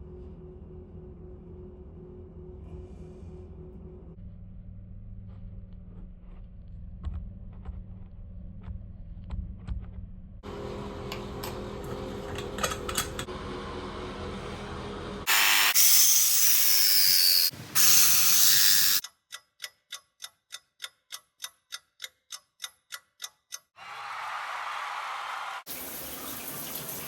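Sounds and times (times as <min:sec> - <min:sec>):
loud rushing hiss: 0:15.3 - 0:16.8.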